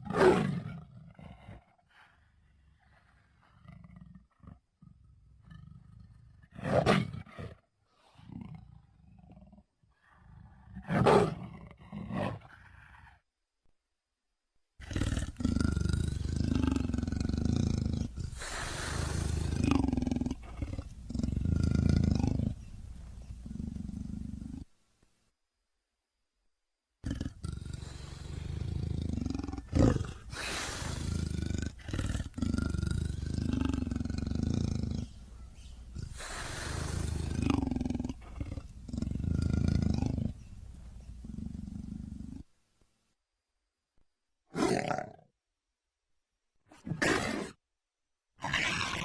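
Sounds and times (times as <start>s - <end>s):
creature growling roars: 27.0s - 35.1s, 36.0s - 40.3s, 48.4s - 49.0s.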